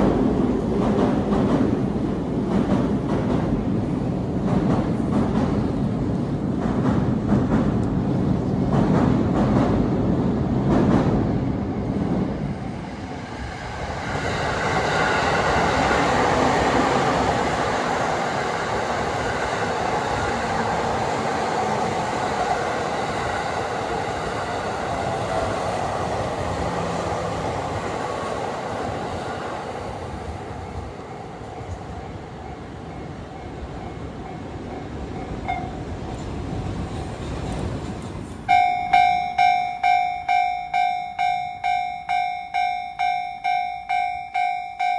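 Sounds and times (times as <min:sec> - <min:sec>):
train wheels on rails: 0:00.0 - 0:44.9
level crossing warning bell: 0:38.5 - 0:44.9.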